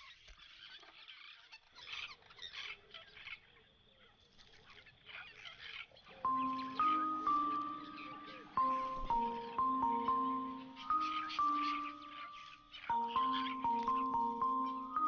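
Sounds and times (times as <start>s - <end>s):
birds chattering harshly: 5.2s - 15.0s
soft music notes: 6.3s - 15.0s.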